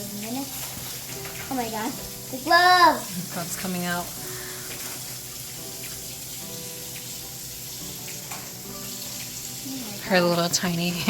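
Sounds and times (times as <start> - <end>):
steady hiss of running water: 0.0 - 11.0
music of held notes: 0.3 - 11.0.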